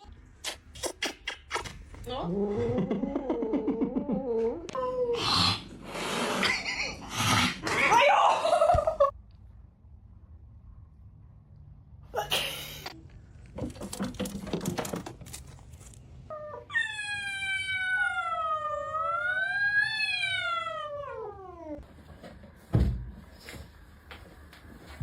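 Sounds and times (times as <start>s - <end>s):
rustling clattering noises: 13.2s - 16.3s
cat yowling: 16.4s - 21.8s.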